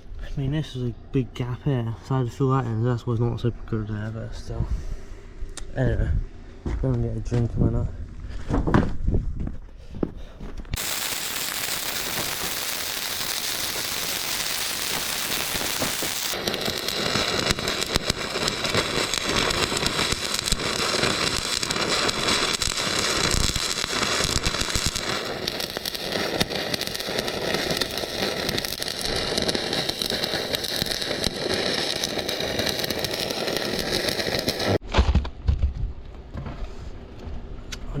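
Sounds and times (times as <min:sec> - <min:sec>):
welding arc crackling: 0:10.8 - 0:34.8.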